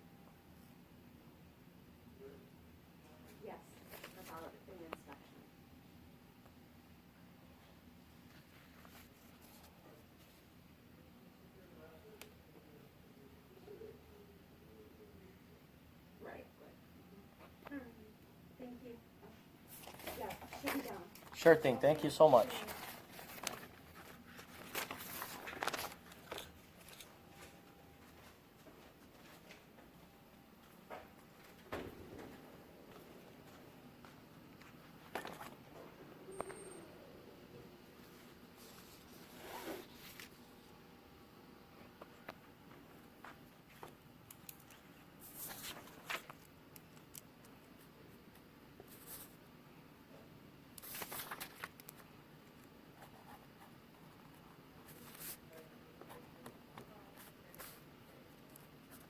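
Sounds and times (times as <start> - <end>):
rustling and scraping: 19.7 - 29.7, 38.0 - 40.5.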